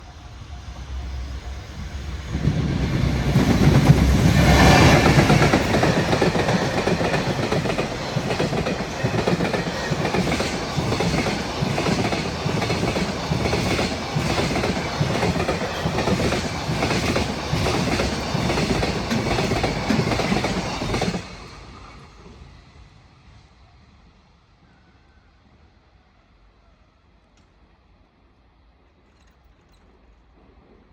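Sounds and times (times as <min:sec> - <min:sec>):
electric locomotive passing: 0:00.0 - 0:29.0
wheels clacking over rail joints: 0:03.2 - 0:21.3.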